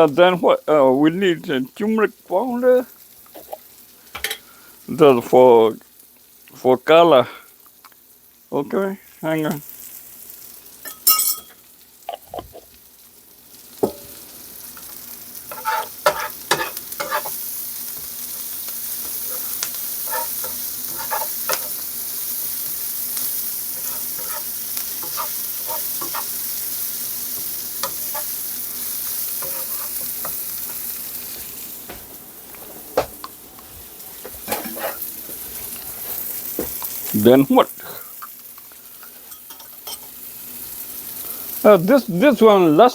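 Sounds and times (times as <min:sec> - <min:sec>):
rice sizzling in a hot pan: 0:00.0 - 0:42.9
spatula scraping and knocking pan: 0:13.8 - 0:14.2, 0:14.8 - 0:18.1, 0:19.0 - 0:26.6, 0:27.3 - 0:37.1.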